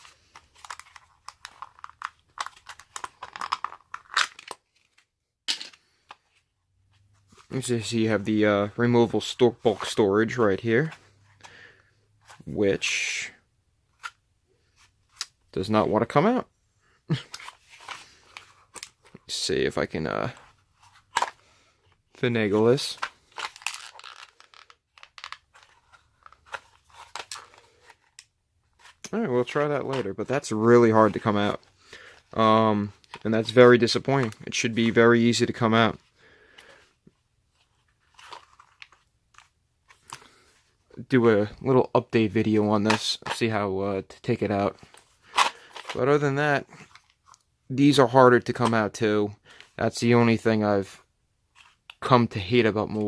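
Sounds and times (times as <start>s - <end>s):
plastic packaging crinkling: 0.0s - 5.0s, 23.0s - 28.2s.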